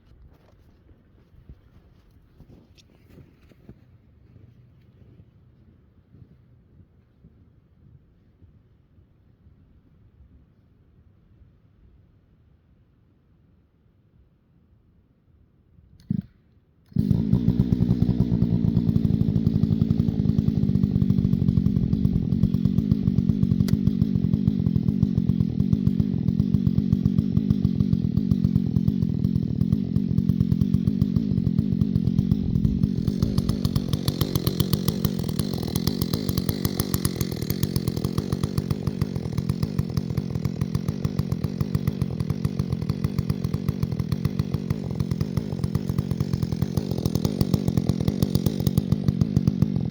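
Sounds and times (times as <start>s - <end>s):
chainsaw running: 16.9s - 49.9s.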